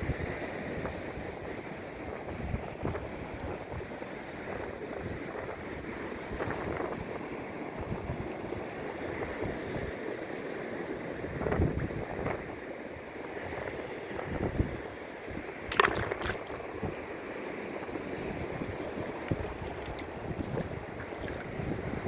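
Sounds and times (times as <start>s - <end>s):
sea water washing and surging: 12.4s - 22.0s
wind buffeting microphone: 17.8s - 22.0s.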